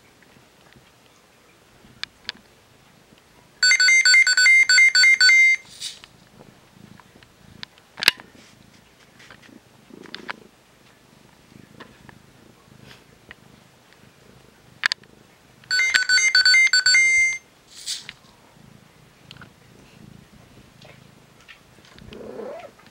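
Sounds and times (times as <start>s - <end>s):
cat purring: 5.7s - 15.8s, 17.6s - 22.9s.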